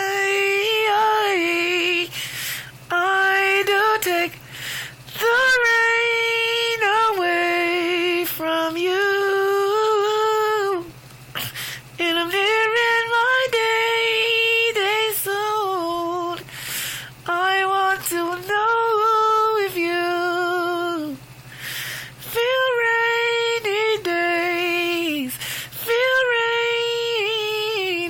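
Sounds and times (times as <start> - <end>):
woman singing unaccompanied: 0.0 - 28.0
woman breathing: 2.1 - 2.8, 4.4 - 5.1, 11.3 - 12.0, 16.4 - 17.2, 21.4 - 22.3, 25.3 - 25.8.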